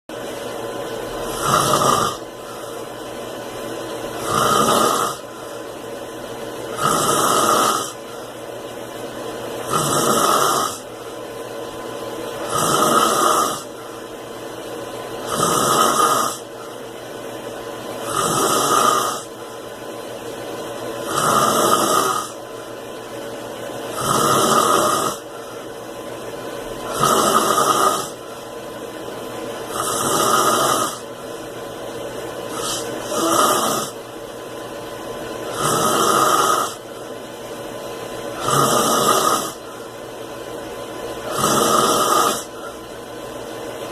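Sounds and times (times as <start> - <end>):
man snoring: 1.1 - 2.9, 4.1 - 5.6, 6.6 - 8.4, 9.6 - 11.0, 12.4 - 14.0, 15.2 - 16.6, 18.0 - 19.4, 21.0 - 22.5, 23.8 - 25.8, 26.8 - 28.4, 29.6 - 31.4, 32.5 - 34.1, 35.4 - 37.0, 38.3 - 39.9, 41.2 - 42.9.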